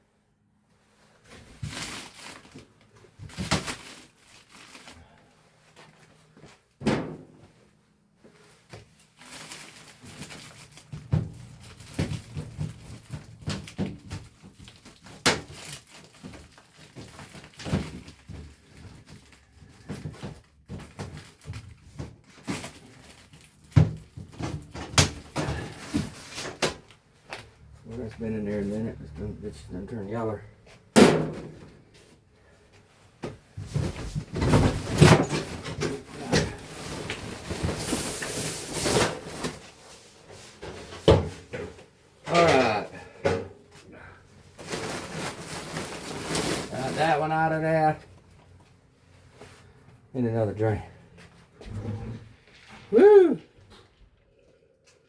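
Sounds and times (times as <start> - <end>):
rustling and scraping: 0.8 - 29.4, 30.6 - 42.8, 43.4 - 47.3
ductwork knocks and clatter: 10.8 - 22.8.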